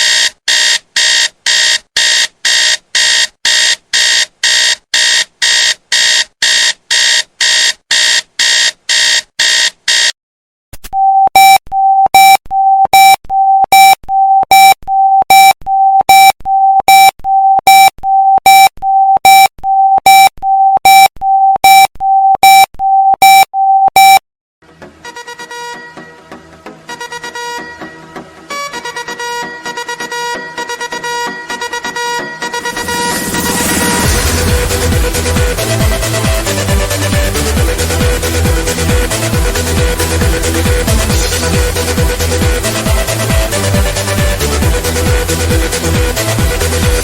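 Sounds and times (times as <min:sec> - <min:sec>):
electronic alarm beeps: 0:11.0 - 0:24.2.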